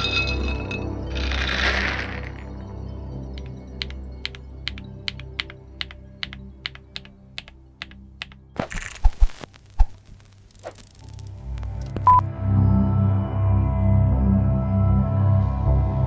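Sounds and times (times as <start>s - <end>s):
soft background music: 0.0s - 10.0s, 10.6s - 16.0s
mechanical keyboard keystrokes: 3.4s - 9.4s.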